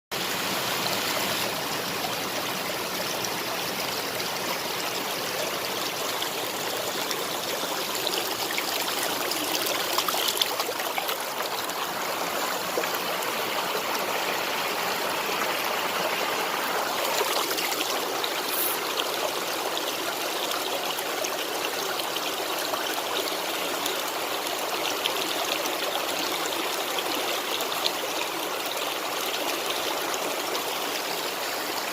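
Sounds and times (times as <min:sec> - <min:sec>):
waterfall splashing: 0:16.5 - 0:18.9.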